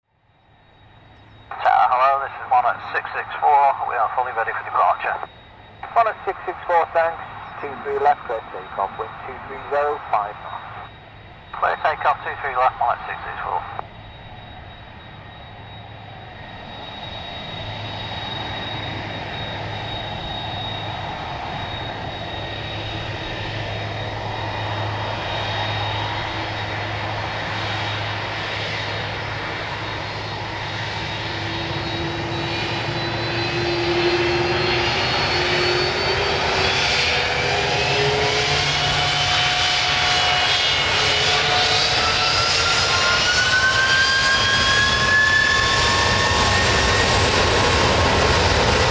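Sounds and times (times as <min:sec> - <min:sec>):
jet engines spooling up: 0:00.8 - 0:48.9
whining tones: 0:05.1 - 0:13.8.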